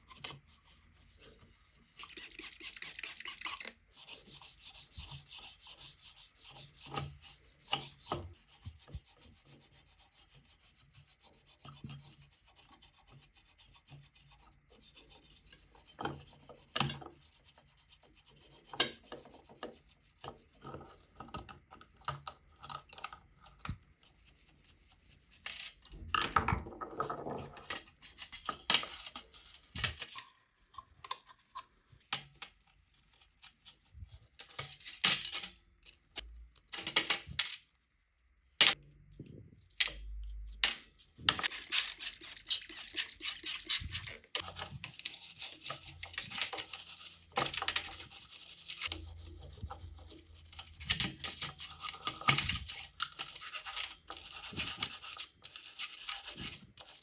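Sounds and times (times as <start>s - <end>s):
hand scrubbing a part: 0.0s - 21.3s, 40.3s - 57.0s.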